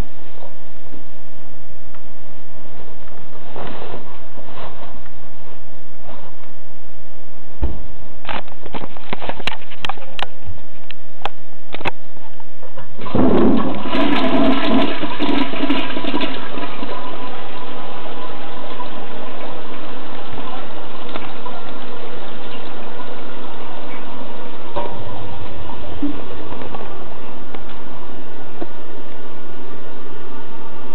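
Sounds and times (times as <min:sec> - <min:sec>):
toilet flushing: 0:13.0 - 0:25.4
water running: 0:13.0 - 0:26.2.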